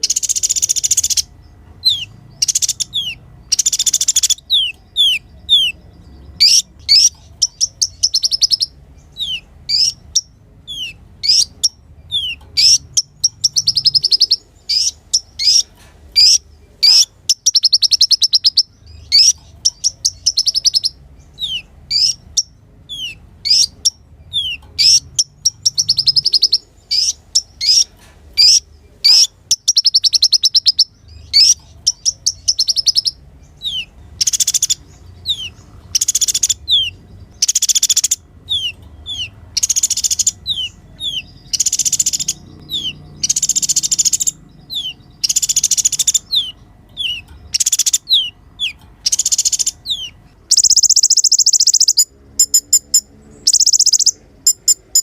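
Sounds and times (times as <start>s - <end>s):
bird singing trills: 0.0s - 55.0s.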